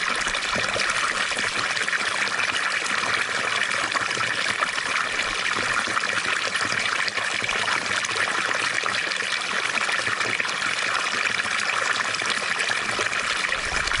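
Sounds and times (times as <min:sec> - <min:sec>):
water fountain splashing: 0:00.0 - 0:14.0.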